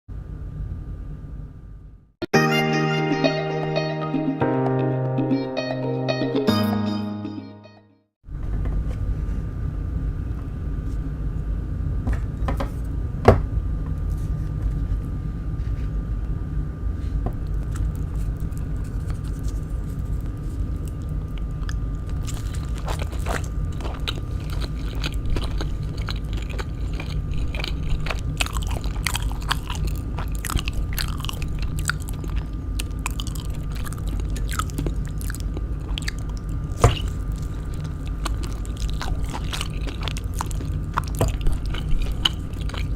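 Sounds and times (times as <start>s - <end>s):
wet chewing: 17.4s - 42.9s
biting fried coating: 17.5s - 42.9s.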